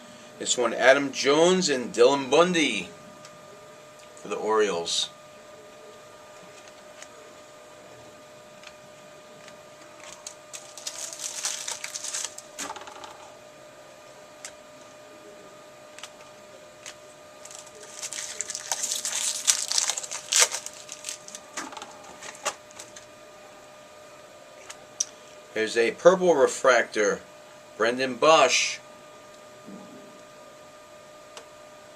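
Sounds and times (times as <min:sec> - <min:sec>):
faint steady hum: 0:00.0 - 0:31.9
foil wrappers crinkling and tearing: 0:09.4 - 0:12.7, 0:16.8 - 0:23.0.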